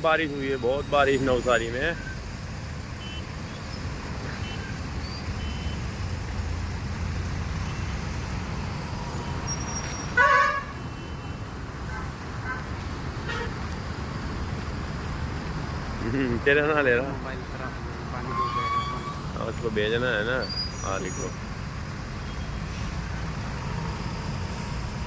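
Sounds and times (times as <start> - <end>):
road traffic rumble: 0.0 - 25.0
vehicle horn toot: 3.0 - 3.3, 5.4 - 5.8, 9.7 - 11.4, 18.3 - 19.2.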